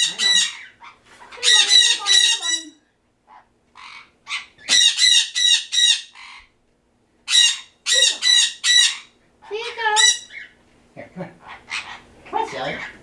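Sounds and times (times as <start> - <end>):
bird harsh squawks: 0.0 - 6.5, 7.3 - 10.6, 11.4 - 13.0.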